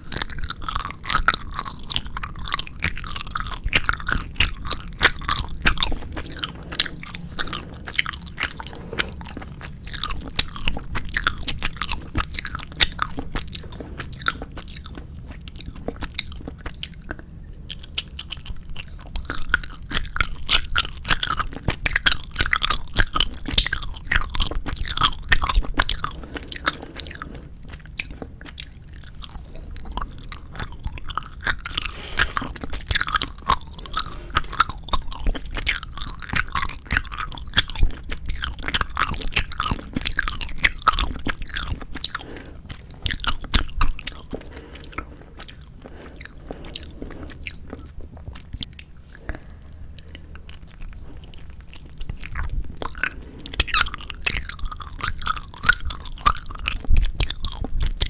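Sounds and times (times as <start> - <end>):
squishy gummy candy chewing: 0.0 - 58.0
candy crunching bites: 17.8 - 58.0.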